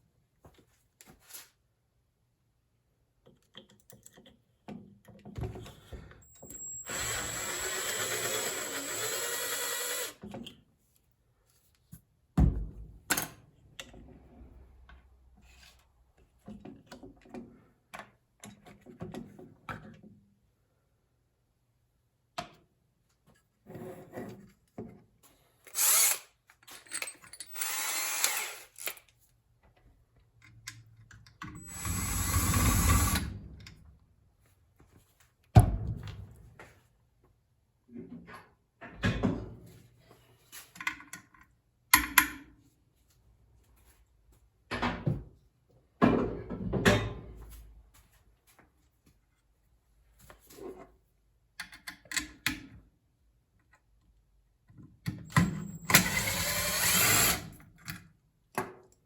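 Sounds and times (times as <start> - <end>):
electric drill drilling into metal: 6.2 - 10.2, 25.7 - 26.3, 27.0 - 28.9, 31.6 - 33.3, 55.6 - 57.6.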